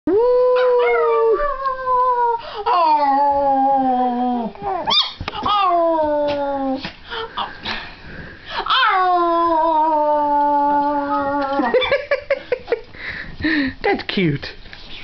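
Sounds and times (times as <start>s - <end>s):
dog howling: 0.1s - 6.8s, 8.7s - 11.8s
girl imitating a howl: 0.1s - 6.8s, 8.7s - 11.7s
dog yelp: 4.8s - 5.7s.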